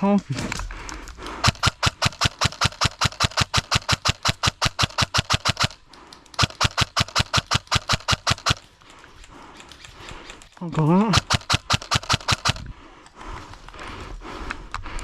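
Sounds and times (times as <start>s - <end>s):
airsoft gun firing bursts: 1.3s - 8.8s, 11.0s - 12.7s.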